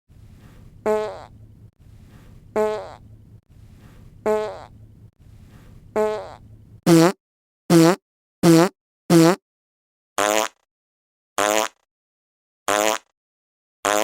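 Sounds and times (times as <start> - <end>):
faint low rumble: 0.1 - 6.8
short pitched fart: 0.8 - 1.3, 2.6 - 3.0, 4.2 - 4.7, 6.0 - 9.4, 10.2 - 10.6, 11.4 - 11.8, 12.7 - 13.1.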